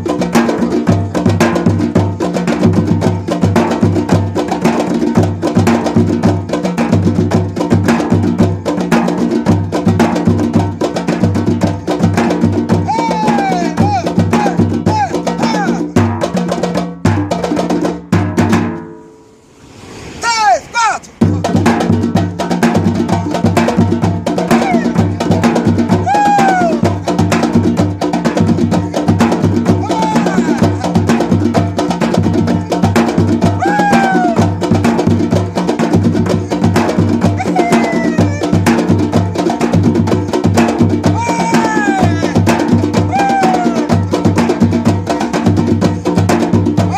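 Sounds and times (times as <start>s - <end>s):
percussion group drumming: 0.0s - 19.0s, 20.2s - 46.9s
pitched glide: 18.7s - 22.0s
falling high-pitched calls: 37.4s - 38.5s.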